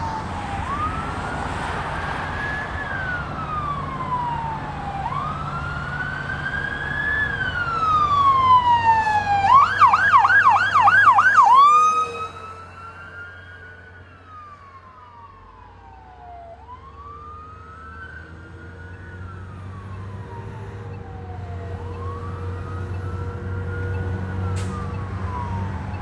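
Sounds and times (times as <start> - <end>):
electronic siren wailing and yelping: 2.4 - 13.8.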